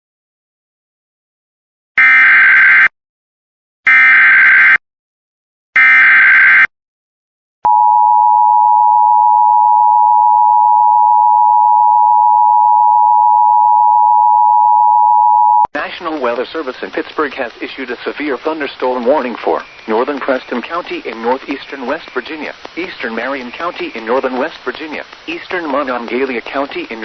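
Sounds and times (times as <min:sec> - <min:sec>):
steady single-pitch alarm tone: 0:02.0 - 0:02.9, 0:03.9 - 0:04.8, 0:05.8 - 0:06.7, 0:07.7 - 0:15.7.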